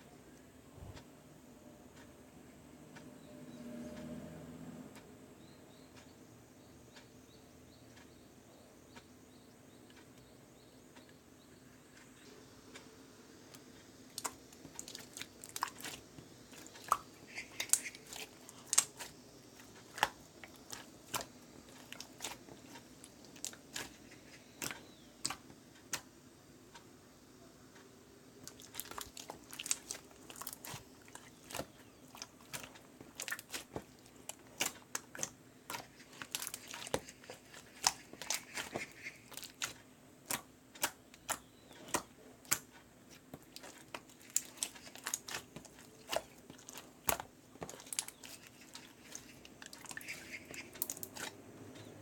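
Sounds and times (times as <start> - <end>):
faint steady hum: 0.0 - 52.0
hands squeezing slime: 14.1 - 25.4, 28.5 - 51.9.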